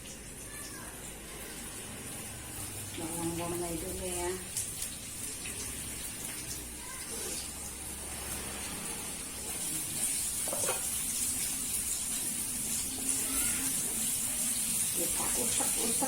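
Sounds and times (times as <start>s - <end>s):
onions sizzling in hot oil: 0.0s - 16.0s.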